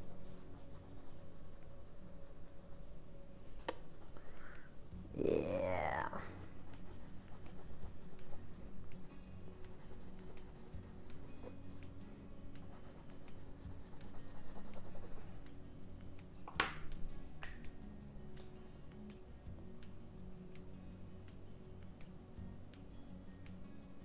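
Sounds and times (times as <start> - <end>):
crayon scratching on paper: 0.0 - 2.8, 3.9 - 4.4, 6.3 - 8.4, 9.0 - 11.5, 12.6 - 15.2.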